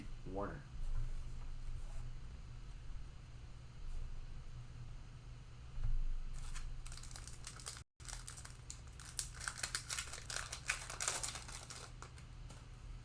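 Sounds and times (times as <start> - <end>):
steady low hum: 0.0 - 13.0
plastic wrapper tearing and crinkling: 6.5 - 12.2.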